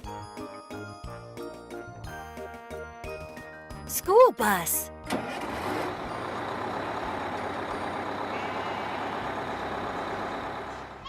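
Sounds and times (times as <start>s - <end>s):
bus engine running: 4.0s - 11.0s.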